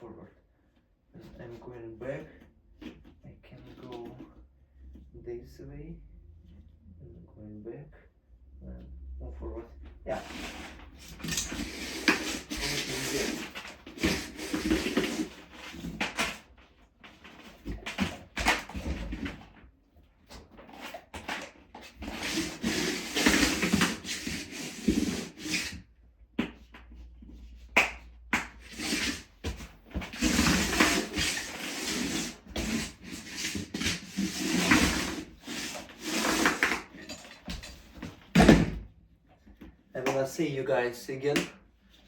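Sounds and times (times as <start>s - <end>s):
cable rubbing and scraping on plastic: 10.1s - 19.5s, 20.3s - 25.9s, 26.7s - 38.2s.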